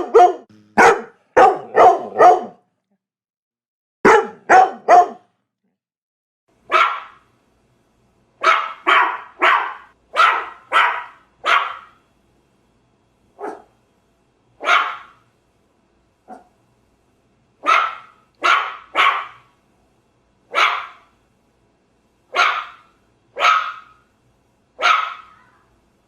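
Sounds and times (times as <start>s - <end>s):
dog barking angrily: 0.0s - 2.6s, 4.0s - 5.3s, 6.7s - 7.2s, 8.4s - 12.0s, 13.4s - 13.7s, 14.6s - 15.2s, 16.3s - 16.5s, 17.6s - 19.5s, 20.5s - 21.1s, 22.3s - 24.0s, 24.8s - 25.5s.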